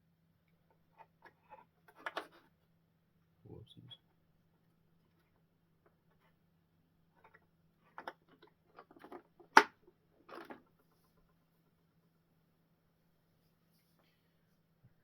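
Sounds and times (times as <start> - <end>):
plastic parts clicking and tapping: 7.2 - 10.8.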